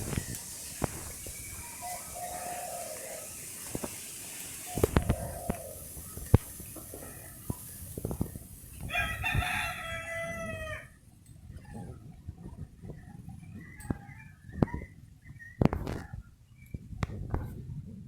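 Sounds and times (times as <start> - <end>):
wind in the trees: 0.0 - 18.0
rooster crowing: 1.8 - 3.4, 8.8 - 11.0.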